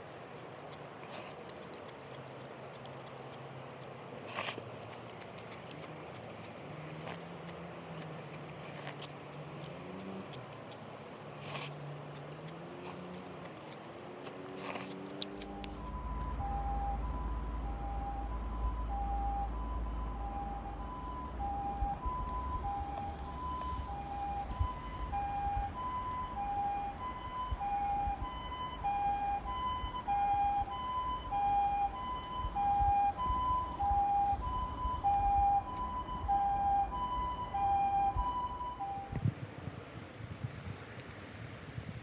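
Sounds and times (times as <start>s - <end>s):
low rumble of traffic: 0.0s - 42.0s
two-tone ambulance siren: 15.3s - 39.2s.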